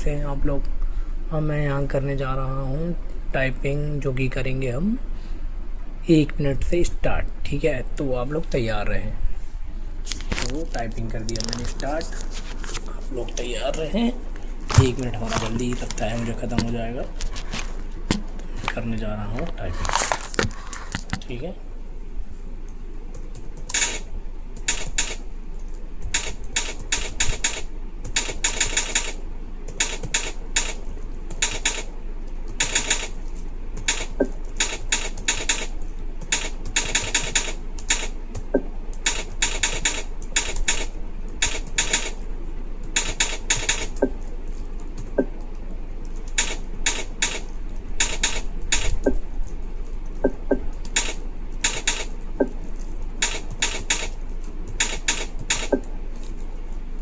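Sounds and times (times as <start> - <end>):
keyboard typing clicks: 24.6 - 33.1, 42.8 - 44.4, 50.0 - 55.9.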